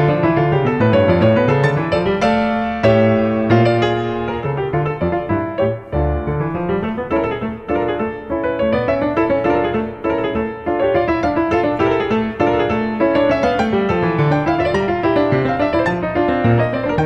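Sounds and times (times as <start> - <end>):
piano music: 0.0 - 17.0.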